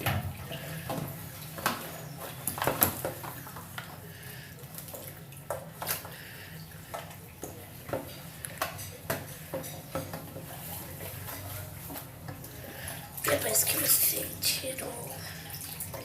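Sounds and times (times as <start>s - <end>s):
tap water running: 0.0s - 16.0s
light knocks and clatters: 6.8s - 12.6s.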